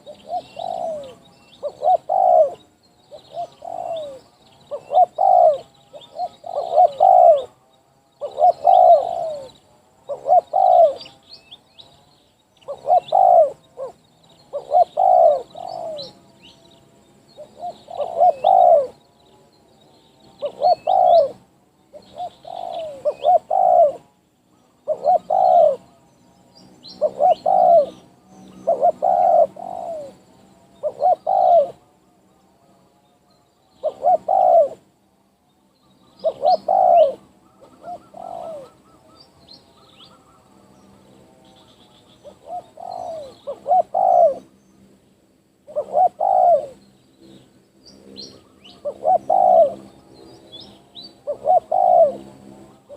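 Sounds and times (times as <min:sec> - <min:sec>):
doves cooing: 0:00.0 - 0:11.3, 0:12.6 - 0:16.6, 0:17.4 - 0:19.1, 0:20.3 - 0:26.0, 0:26.9 - 0:32.0, 0:33.8 - 0:35.0, 0:36.0 - 0:44.6, 0:45.6 - 0:46.8, 0:48.0 - 0:52.9
small birds chirping: 0:00.0 - 0:52.9.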